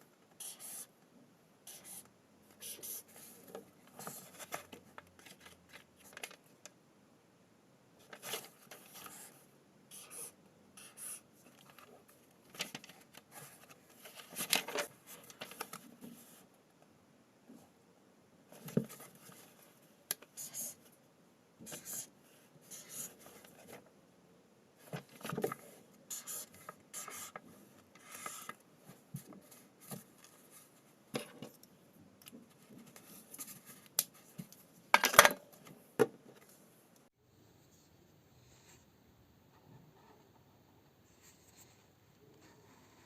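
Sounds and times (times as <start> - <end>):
pen scratching on paper: 0.4 - 0.9, 1.7 - 2.0, 9.9 - 11.3, 20.4 - 20.8, 21.7 - 22.1, 22.7 - 23.3, 26.1 - 27.4.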